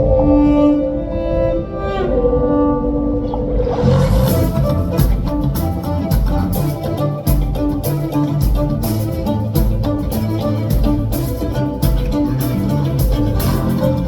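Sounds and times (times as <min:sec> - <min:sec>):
bass guitar: 0:03.6 - 0:14.0
steady drum beat: 0:04.2 - 0:14.0.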